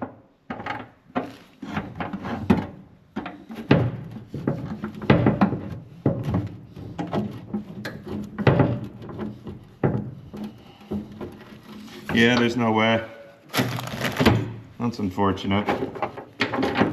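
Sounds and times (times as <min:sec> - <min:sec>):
hand tools clunking on steel: 0:00.0 - 0:12.8.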